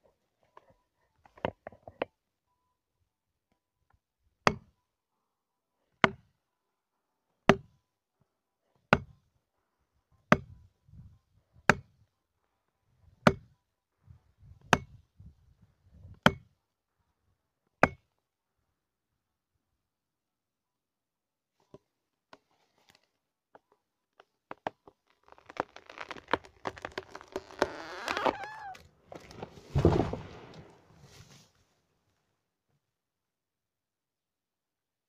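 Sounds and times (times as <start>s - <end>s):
axe chopping wood: 4.5s - 4.7s, 7.5s - 7.7s, 11.7s - 11.9s, 16.2s - 16.5s.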